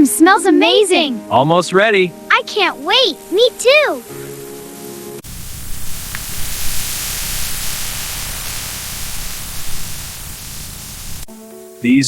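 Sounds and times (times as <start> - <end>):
steady hiss: 2.6 - 12.0.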